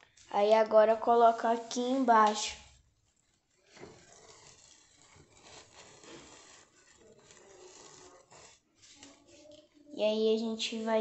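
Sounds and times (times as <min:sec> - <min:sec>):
ribbon rustling on cardboard: 0:02.6 - 0:09.8.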